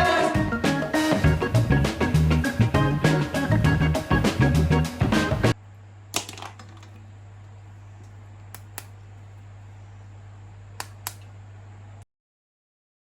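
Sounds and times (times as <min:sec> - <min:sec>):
steady low hum: 0:05.5 - 0:12.0.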